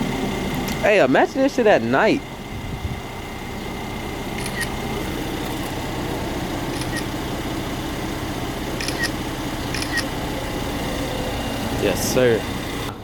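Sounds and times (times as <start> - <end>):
car engine idling: 0.0 - 13.0
short high clicks: 4.4 - 4.8, 8.8 - 10.1.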